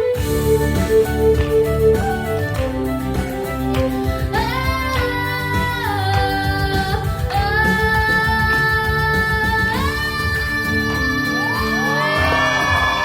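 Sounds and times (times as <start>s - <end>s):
guitar-led instrumental backing: 0.0s - 13.0s
young voices singing: 4.3s - 13.0s.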